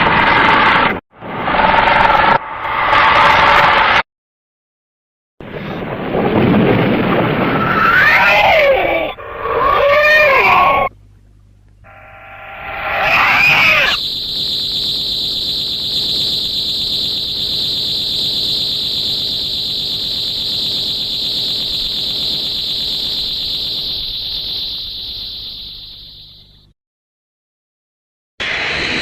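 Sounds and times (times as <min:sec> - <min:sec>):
high-pitched electronic whine: 0:00.0 - 0:04.0, 0:11.8 - 0:26.7, 0:28.4 - 0:29.0
warbling electronic sound: 0:11.9 - 0:26.3.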